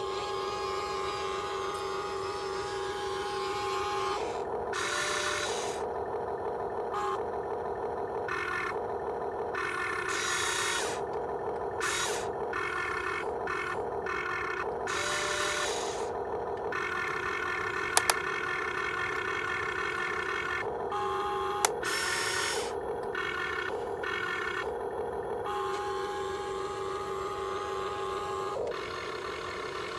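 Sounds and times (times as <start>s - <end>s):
toy electric motors whirring: 0.0s - 29.9s
sharp clicks: 15.6s - 18.6s, 21.6s - 23.2s.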